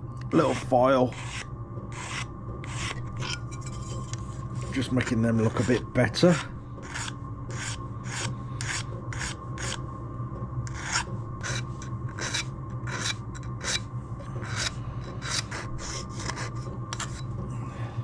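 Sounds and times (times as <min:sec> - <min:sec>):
low hum: 0:00.0 - 0:18.0
hand file on metal edge: 0:00.4 - 0:03.4, 0:05.4 - 0:09.8, 0:10.7 - 0:13.8, 0:14.4 - 0:17.3.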